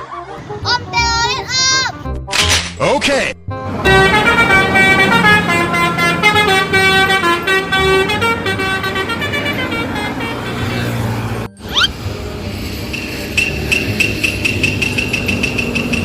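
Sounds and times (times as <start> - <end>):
engine running: 3.6 - 16.0
bus horn playing a tune: 3.7 - 12.1, 12.9 - 16.0.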